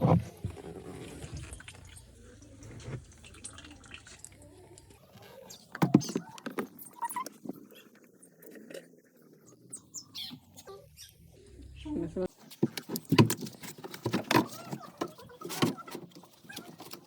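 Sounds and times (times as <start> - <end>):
water dripping: 1.0 - 8.0.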